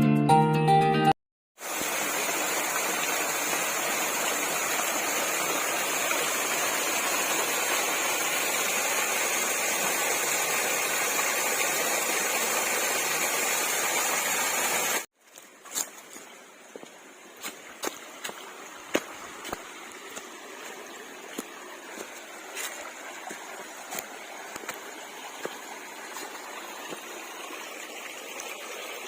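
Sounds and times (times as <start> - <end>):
waterfall rushing: 1.6 - 15.1.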